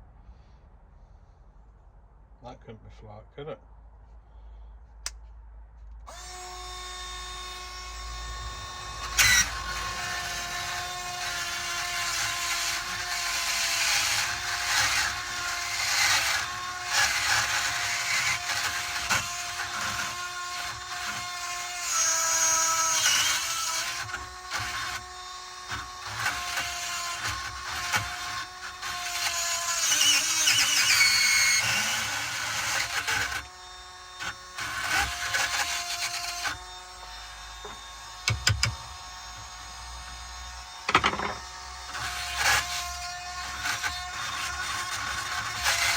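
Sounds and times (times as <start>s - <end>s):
rotary tool whining: 6.1s - 45.9s
burr grinding into lock: 40.9s - 41.5s.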